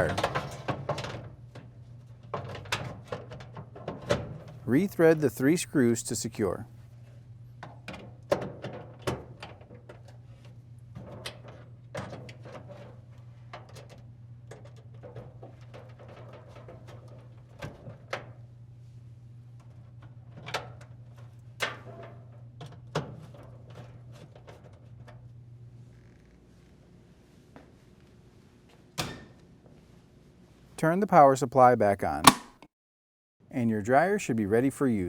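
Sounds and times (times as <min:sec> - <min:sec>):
steady low hum: 0:03.6 - 0:16.3.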